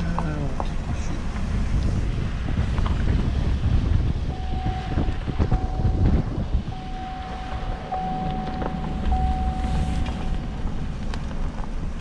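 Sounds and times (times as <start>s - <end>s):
engine and road rumble: 0.0s - 12.0s
thin steady whine: 4.3s - 12.0s.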